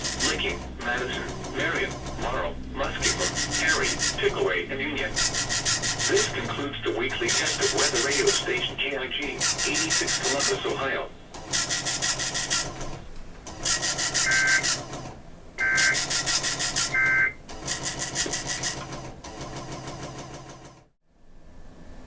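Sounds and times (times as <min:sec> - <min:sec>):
raspy digital data bursts: 0:03.0 - 0:04.2, 0:05.1 - 0:06.4, 0:07.3 - 0:08.4, 0:09.4 - 0:10.6, 0:13.7 - 0:14.8, 0:15.6 - 0:17.4.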